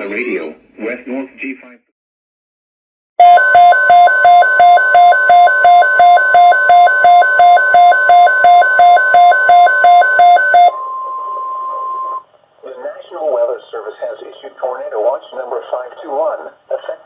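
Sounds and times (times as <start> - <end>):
pulsing alarm beeps: 3.2 - 12.2
steady alarm tone: 3.2 - 12.2.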